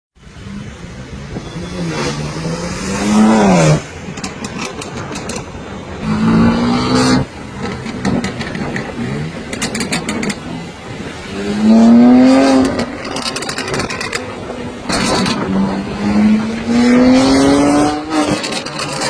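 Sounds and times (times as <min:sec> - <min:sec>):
car engine revving: 0:00.3 - 0:19.0
exhaust pops and crackles: 0:03.6 - 0:06.3, 0:06.9 - 0:11.2, 0:12.5 - 0:16.0, 0:18.1 - 0:19.0.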